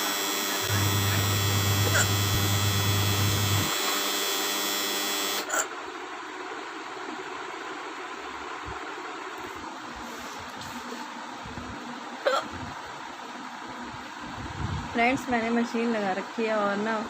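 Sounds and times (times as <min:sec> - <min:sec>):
steady low hum: 0:00.0 - 0:15.5
woman hiccuping: 0:05.5 - 0:05.7, 0:12.2 - 0:12.5.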